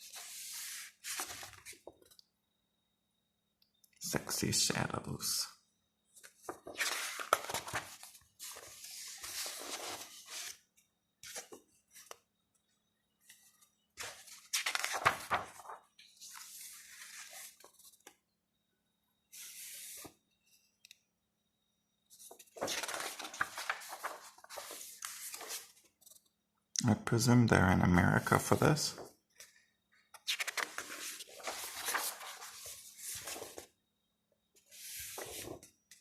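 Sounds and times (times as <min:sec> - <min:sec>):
paper and card rustling: 0:06.3 - 0:10.6, 0:14.0 - 0:18.0, 0:22.2 - 0:25.8, 0:30.2 - 0:33.7, 0:34.8 - 0:35.6.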